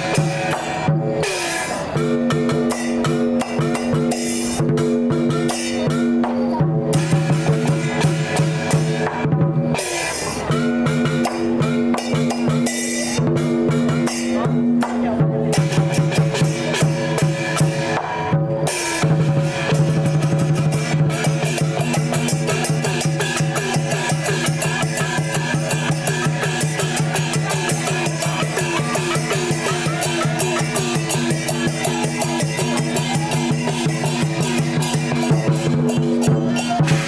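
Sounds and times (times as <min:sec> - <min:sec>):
cymbals clashing: 0:00.0 - 0:37.0
large drum beating fast: 0:13.2 - 0:37.0
gongs ringing: 0:20.7 - 0:37.0.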